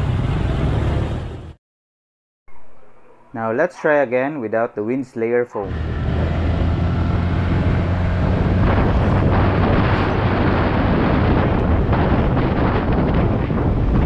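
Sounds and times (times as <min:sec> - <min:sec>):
motorcycle engine hum: 0:00.0 - 0:01.6, 0:05.6 - 0:14.0
wind buffeting microphone: 0:05.7 - 0:14.0.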